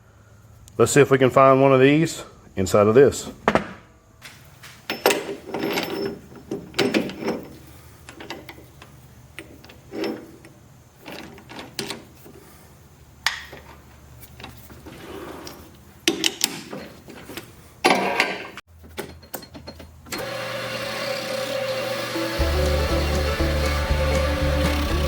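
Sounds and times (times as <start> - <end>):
metal tools clunking and scraping: 3.4 - 12.7, 13.3 - 20.3.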